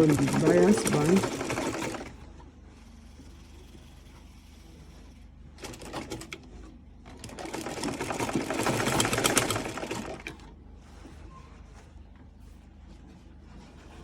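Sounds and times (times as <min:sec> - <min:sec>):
sewing machine stitching: 0:00.0 - 0:02.3, 0:05.5 - 0:10.5.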